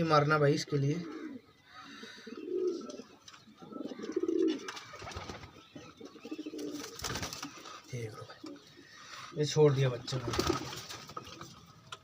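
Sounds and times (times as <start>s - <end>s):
pigeons cooing: 0.8s - 9.4s.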